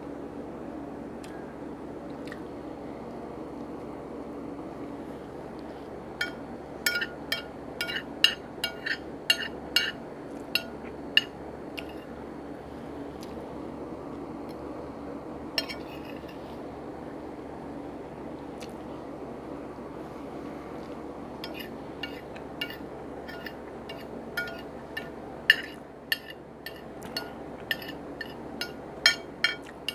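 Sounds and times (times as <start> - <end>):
low background hum: 0.0 - 29.9
utensil clinking against dish: 6.2 - 12.1, 15.6 - 16.4, 21.4 - 29.9.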